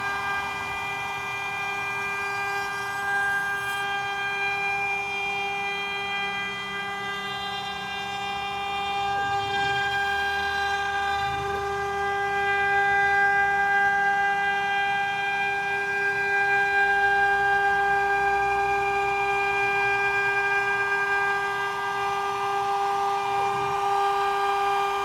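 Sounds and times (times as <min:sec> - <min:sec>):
router spindle whine: 0:00.0 - 0:25.0.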